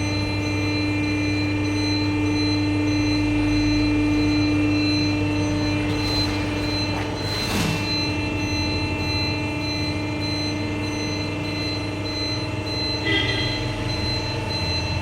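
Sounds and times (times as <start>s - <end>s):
factory machinery humming: 4.0s - 13.1s.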